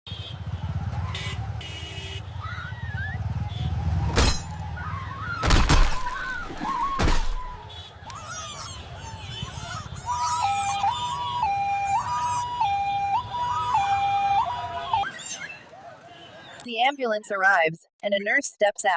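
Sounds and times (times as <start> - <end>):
smashing impacts: 4.2 - 4.5, 5.4 - 7.6.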